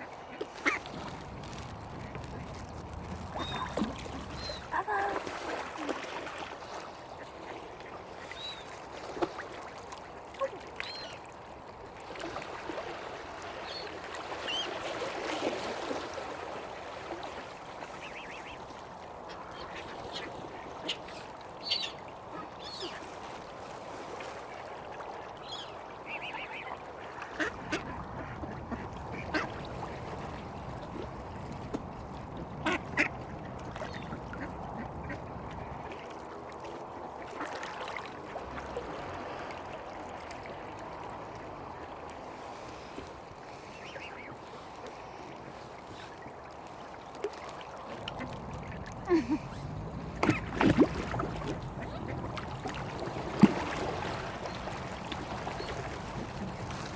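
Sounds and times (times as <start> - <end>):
ducks quacking: 0.3 - 0.8, 27.3 - 29.5.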